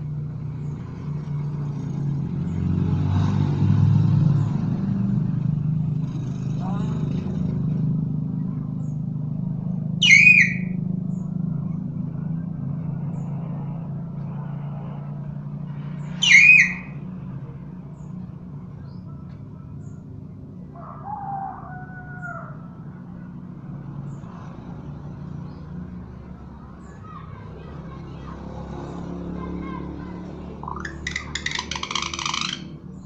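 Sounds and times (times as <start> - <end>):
myna bird shrill calls: 10.0 - 10.8, 16.0 - 17.0, 30.6 - 32.8.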